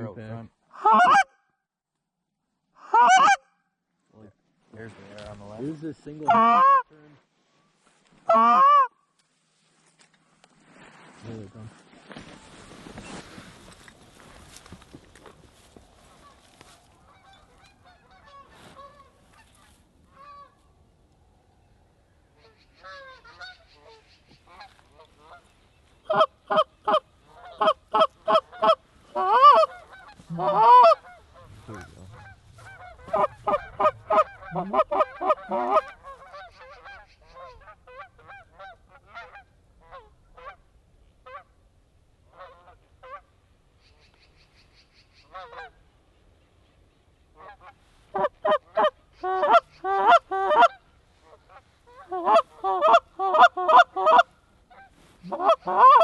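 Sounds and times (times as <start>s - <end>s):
duck call quacks: 0.8s - 1.4s, 2.8s - 3.5s, 6.2s - 6.9s, 8.3s - 8.9s, 26.1s - 40.6s, 47.4s - 56.0s
faint duck quacking: 22.3s - 40.6s.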